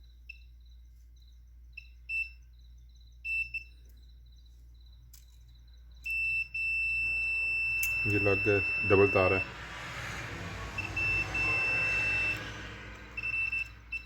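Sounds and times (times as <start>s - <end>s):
steady multimeter beep: 0.0s - 1.0s, 1.7s - 4.6s, 6.0s - 9.5s, 10.8s - 12.5s, 13.2s - 14.0s
multimeter beeping: 3.2s - 4.0s, 6.0s - 9.5s, 10.8s - 14.0s.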